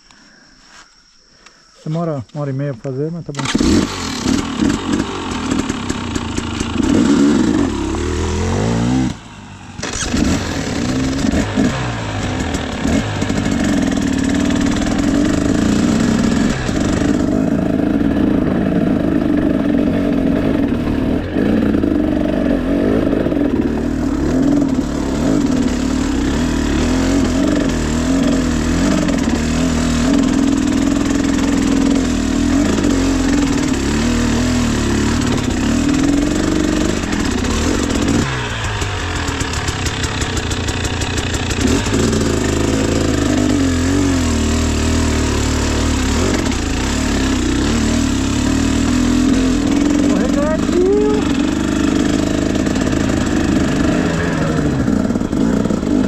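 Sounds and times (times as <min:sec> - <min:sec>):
dirt bike engine revving: 0:03.3 - 0:56.0.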